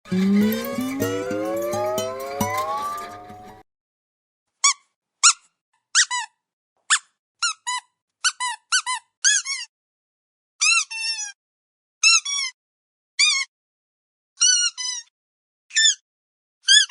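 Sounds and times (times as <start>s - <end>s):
squeaky dog toy squeaking: 6.0s - 6.3s, 14.4s - 15.1s.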